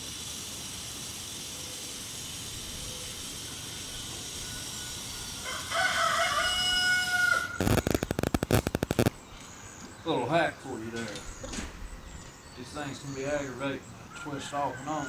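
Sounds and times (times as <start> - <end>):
steady hiss: 0.0 - 9.2
rooster crowing: 5.4 - 7.8, 14.6 - 15.0
microphone crackling: 7.6 - 9.2.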